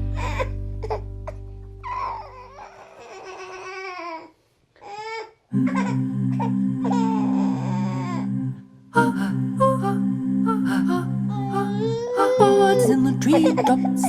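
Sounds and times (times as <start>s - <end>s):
background music: 0.0s - 2.2s, 5.6s - 14.0s
baby crying and babbling: 0.2s - 1.0s, 1.8s - 6.0s, 6.8s - 8.3s, 11.3s - 14.0s.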